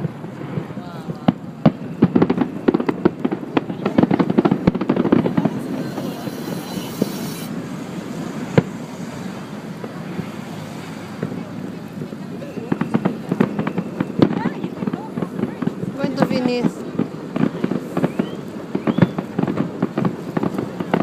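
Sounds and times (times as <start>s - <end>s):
fireworks bangs and crackles: 0.0s - 21.0s
high hiss: 5.4s - 7.6s.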